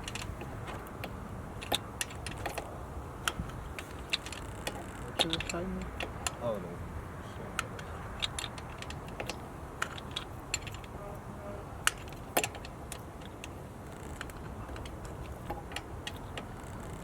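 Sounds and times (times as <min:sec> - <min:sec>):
hand tools clinking on engine parts: 0:00.0 - 0:06.6, 0:07.5 - 0:11.0.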